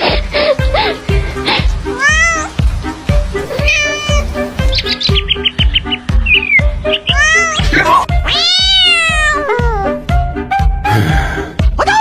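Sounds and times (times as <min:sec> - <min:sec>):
music with steady beat: 0:00.0 - 0:11.8
cat meowing: 0:02.0 - 0:02.6, 0:03.4 - 0:05.2, 0:06.9 - 0:10.0.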